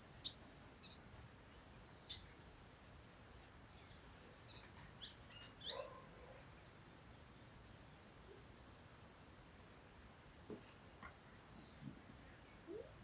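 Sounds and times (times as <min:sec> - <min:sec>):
bird chirping: 0:00.2 - 0:02.4.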